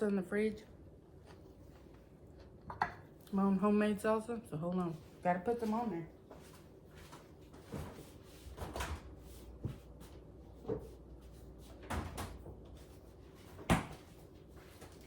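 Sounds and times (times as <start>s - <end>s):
refrigerator door opening and shutting: 11.8s - 12.5s.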